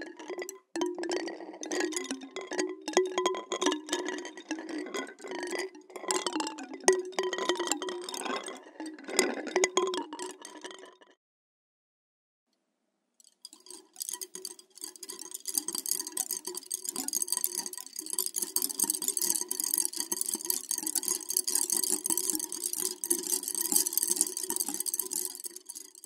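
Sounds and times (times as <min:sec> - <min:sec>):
wooden sticks clattering: 0:13.4 - 0:26.0.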